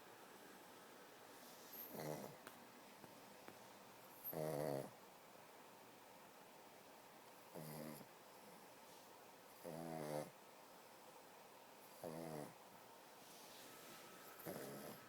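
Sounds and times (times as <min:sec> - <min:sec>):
dog snoring: 0:01.7 - 0:02.4, 0:04.1 - 0:05.0, 0:07.4 - 0:08.6, 0:09.5 - 0:10.4, 0:11.8 - 0:12.6, 0:14.2 - 0:15.0.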